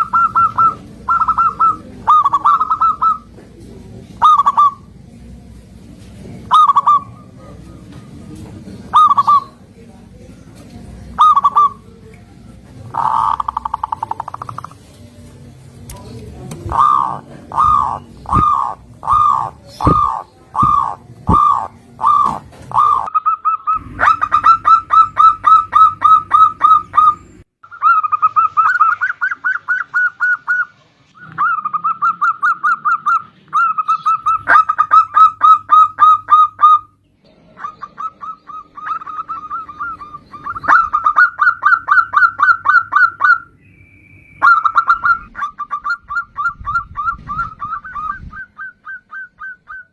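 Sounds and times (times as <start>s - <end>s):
dove cooing: 0.0s - 3.4s, 4.2s - 4.9s, 6.4s - 7.9s, 8.8s - 9.6s, 11.1s - 12.0s, 12.9s - 14.9s, 16.5s - 43.5s, 44.4s - 49.9s.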